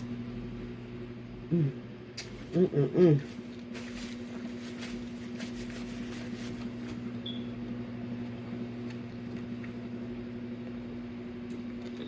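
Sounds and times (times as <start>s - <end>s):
low electrical hum: 0.0s - 12.0s
person chewing food: 8.8s - 10.0s.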